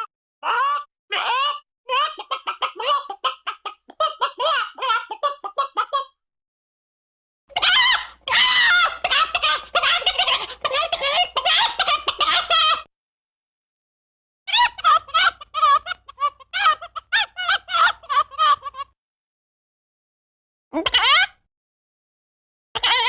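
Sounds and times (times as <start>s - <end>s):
cartoon chicken clucking: 0.0s - 6.2s, 7.5s - 12.9s, 14.5s - 19.0s, 20.8s - 21.4s, 22.8s - 23.0s.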